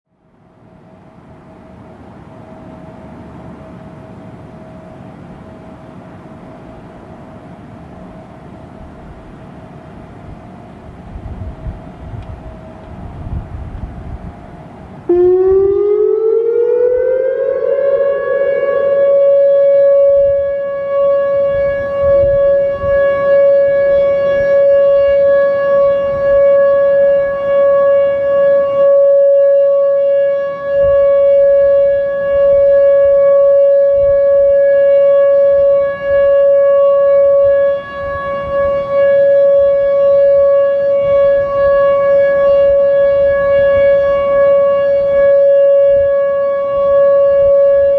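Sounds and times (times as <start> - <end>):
outdoor warning siren: 0.1 - 47.9
faint rising siren tone: 11.7 - 47.9.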